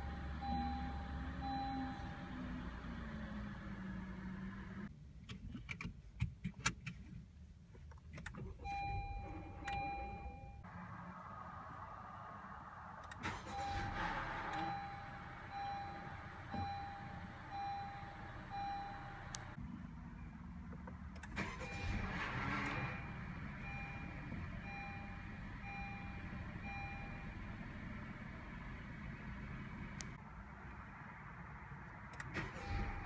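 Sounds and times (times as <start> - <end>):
dashboard chime beeps: 0.0 - 2.1, 8.7 - 10.6
car engine starter grinding: 0.0 - 4.9, 13.0 - 19.6, 21.2 - 30.2, 32.1 - 33.0
low engine rumble: 0.0 - 4.9, 8.5 - 33.0.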